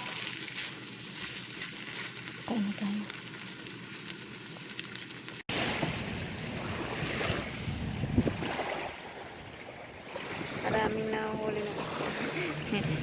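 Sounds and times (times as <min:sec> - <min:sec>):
pan sizzling: 0:00.0 - 0:05.5
ocean waves washing ashore: 0:05.5 - 0:13.0
wind buffeting microphone: 0:05.8 - 0:13.0.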